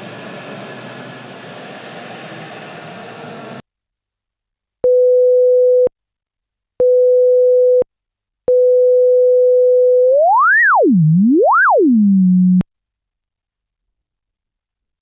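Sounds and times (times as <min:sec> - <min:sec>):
sine-wave test tone beeps: 0:04.9 - 0:05.9, 0:06.8 - 0:07.8, 0:08.5 - 0:12.6
tone gliding upward: 0:10.1 - 0:12.6.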